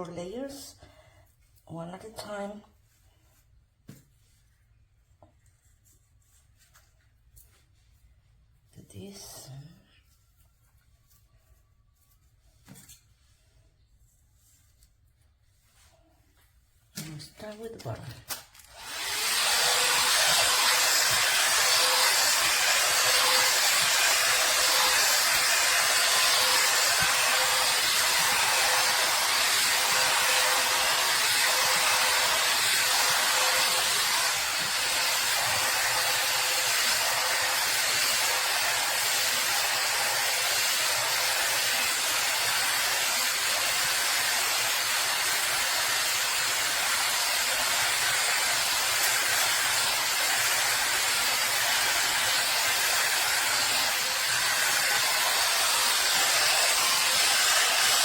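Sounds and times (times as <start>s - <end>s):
hot air brush blowing air: 18.7s - 58.0s.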